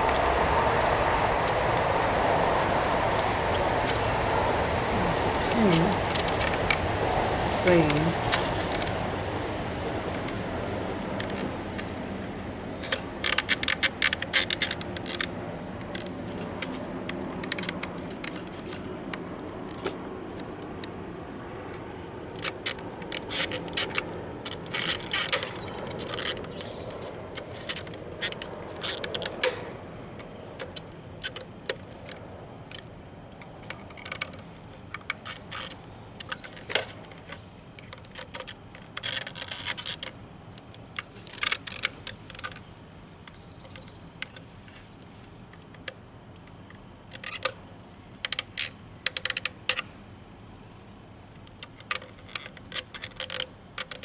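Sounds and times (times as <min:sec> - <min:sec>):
plastic clicking and scraping: 0:12.8 - 0:21.0, 0:21.7 - 0:47.6, 0:48.2 - 0:49.9, 0:51.3 - 0:54.0.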